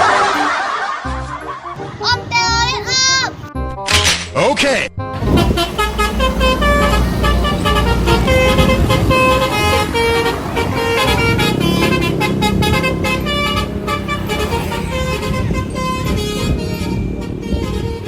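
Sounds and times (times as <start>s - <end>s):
bus engine rumble: 5.2s - 18.0s
multi-tone bus horn melody: 5.2s - 18.0s.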